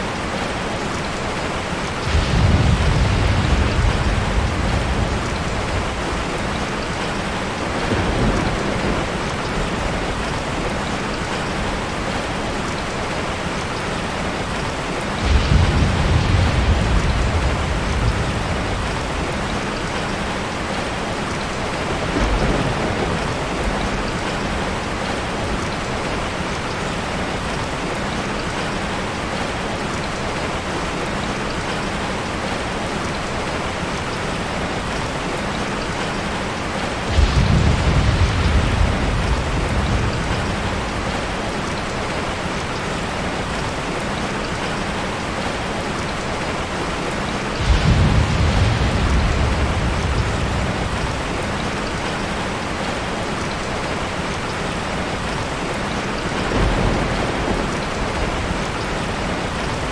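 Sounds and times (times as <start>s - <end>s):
heavy rain falling: 0.0s - 59.9s
thunder rumbling: 1.7s - 12.3s, 15.0s - 20.8s, 21.8s - 25.7s, 36.6s - 43.6s, 47.2s - 59.9s.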